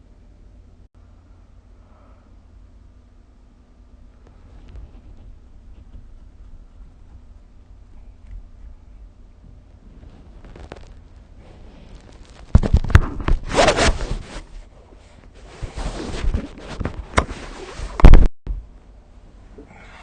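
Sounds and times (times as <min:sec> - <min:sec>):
bedding rustling and scraping: 0:04.2 - 0:18.2.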